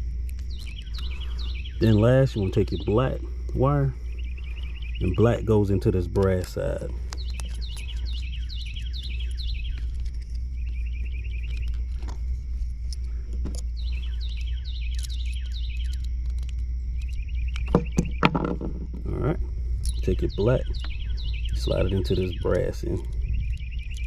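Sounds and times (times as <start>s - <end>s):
songbird chirping: 0.0s - 24.0s
steady low hum: 0.0s - 24.0s
sharp clicks: 12.9s - 18.9s
knocks: 17.7s - 19.0s.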